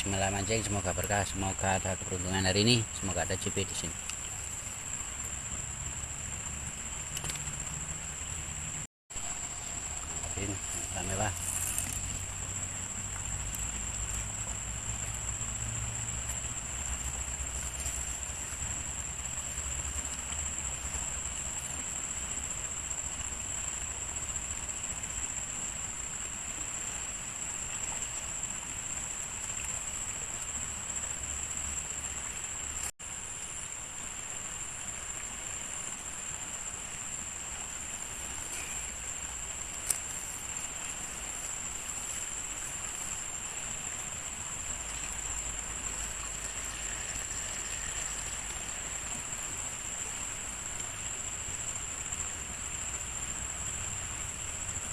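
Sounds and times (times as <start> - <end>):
water rushing: 0.0 - 54.9
sharp click: 7.1 - 7.5.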